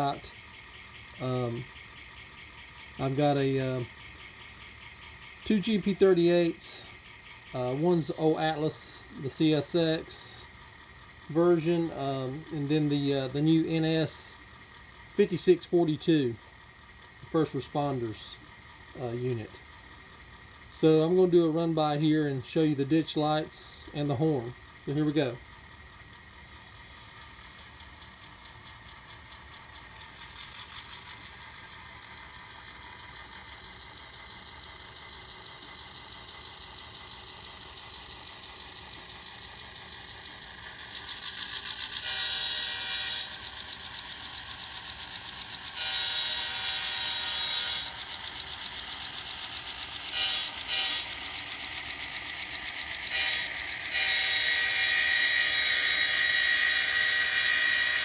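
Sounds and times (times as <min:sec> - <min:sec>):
model diesel engine sound: 0:00.0 - 0:58.0
train horn blasts: 0:42.0 - 0:43.2, 0:45.8 - 0:47.8.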